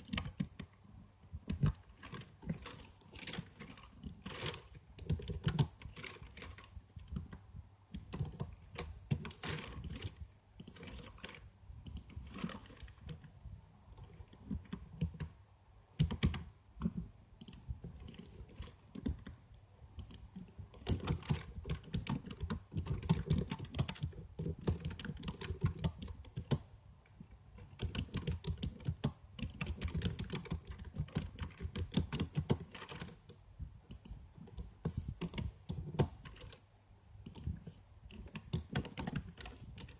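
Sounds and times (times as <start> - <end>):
computer keyboard typing: 0.0 - 0.7, 1.3 - 13.3, 13.9 - 15.4, 16.0 - 19.4, 20.0 - 26.7, 27.6 - 36.6, 37.2 - 39.9.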